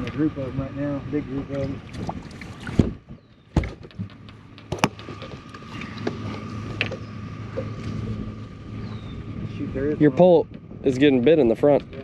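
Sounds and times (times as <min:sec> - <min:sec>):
faint whine: 0:00.0 - 0:12.0
steady low hum: 0:00.0 - 0:12.0
gear knocking against boat: 0:01.9 - 0:07.8.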